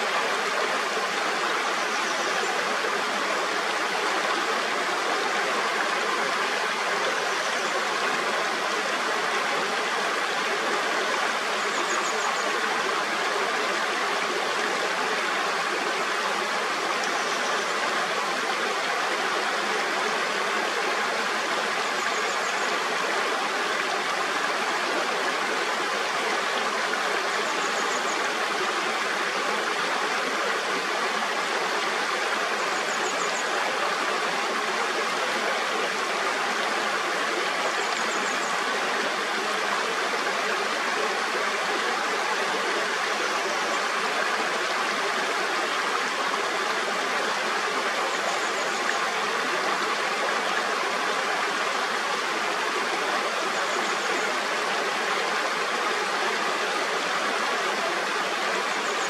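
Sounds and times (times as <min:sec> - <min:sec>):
water rushing over rocks: 0:00.0 - 0:59.0.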